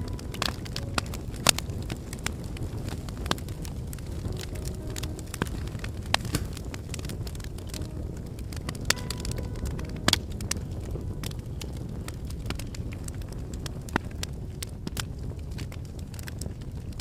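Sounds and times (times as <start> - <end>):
wood fire crackling and popping: 0.0 - 17.0.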